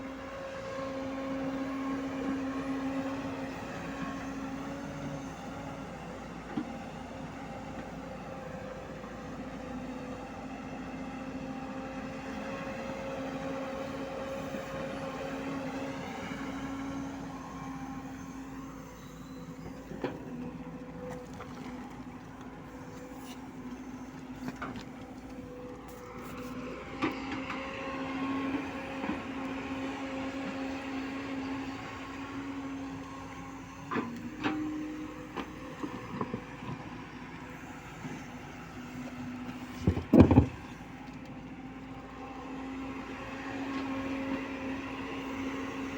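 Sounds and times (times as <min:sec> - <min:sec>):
excavator diesel engine running: 0:00.0 - 0:45.9
hydraulic whine: 0:12.1 - 0:45.9.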